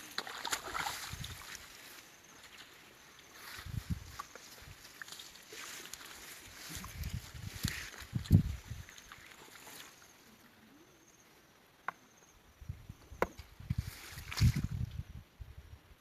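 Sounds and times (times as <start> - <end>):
water sloshing and splashing: 0.0 - 10.1, 13.8 - 14.8.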